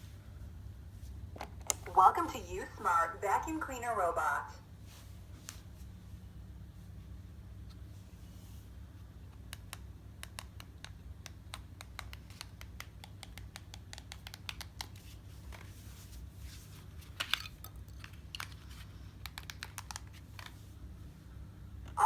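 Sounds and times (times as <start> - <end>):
steady low hum: 0.0 - 10.2.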